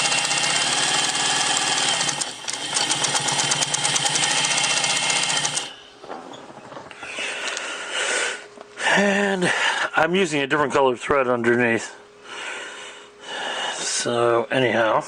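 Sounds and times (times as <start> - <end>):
sewing machine clatter: 0.0 - 5.8
handling noise: 5.8 - 7.6.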